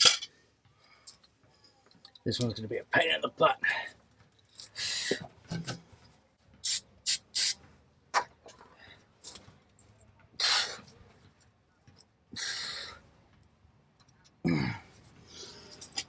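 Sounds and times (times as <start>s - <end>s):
short hissing bursts: 6.6s - 7.6s.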